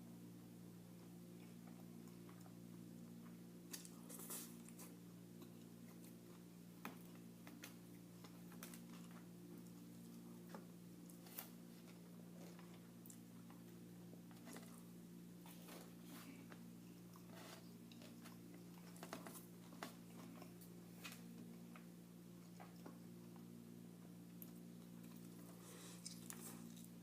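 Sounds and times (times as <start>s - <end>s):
steady low hum: 0.0s - 27.0s
chewing and food handling: 1.0s - 27.0s.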